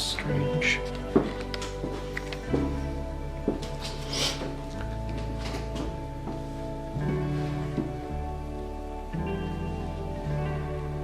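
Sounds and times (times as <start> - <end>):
slow background music with bass: 0.0 - 11.0.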